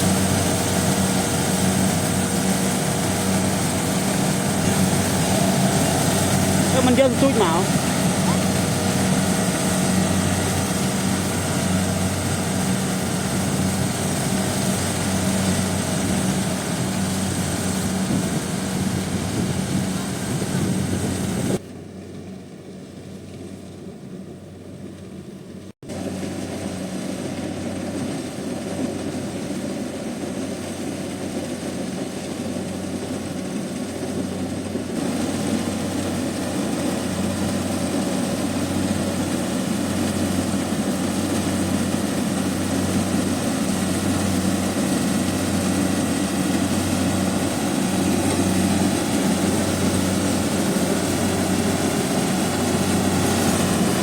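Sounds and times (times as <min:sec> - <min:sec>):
combine harvester engine drone: 0:00.0 - 0:54.0.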